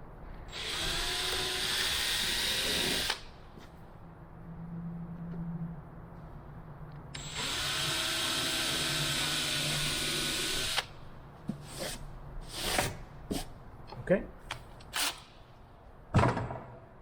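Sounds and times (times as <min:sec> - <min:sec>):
power drill drilling: 0:00.5 - 0:03.2, 0:07.2 - 0:10.9.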